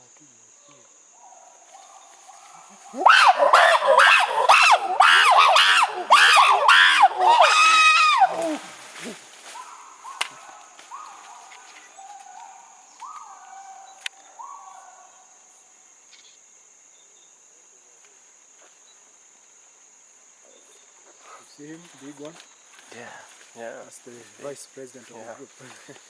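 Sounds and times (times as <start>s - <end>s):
high insect drone: 0.0s - 26.0s
chimpanzees screaming: 2.4s - 15.1s.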